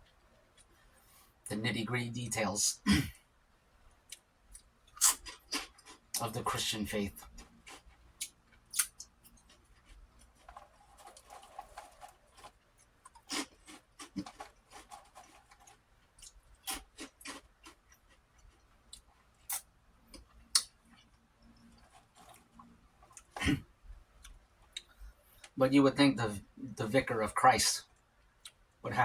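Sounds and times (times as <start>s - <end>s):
crisp crunches of eating: 4.0s - 23.6s.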